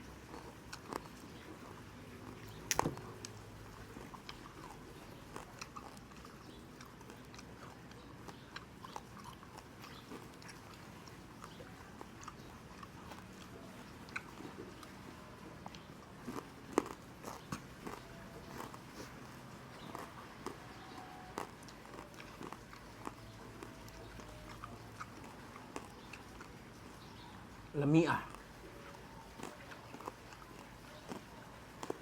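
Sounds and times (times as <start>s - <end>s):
crunching fried pork skin: 0.0s - 27.2s, 27.9s - 32.0s
wet mouth clicks: 14.0s - 14.9s.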